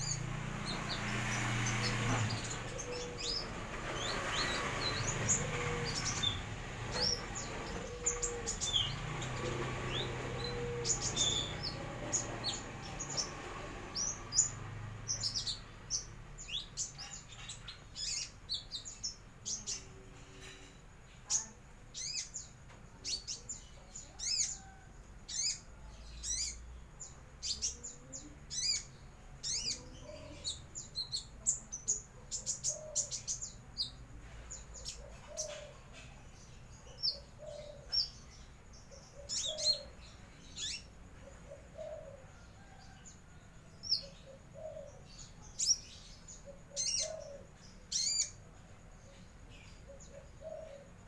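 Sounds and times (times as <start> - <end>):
young bird chirping: 21.2 - 22.4, 27.4 - 42.9, 43.9 - 48.5.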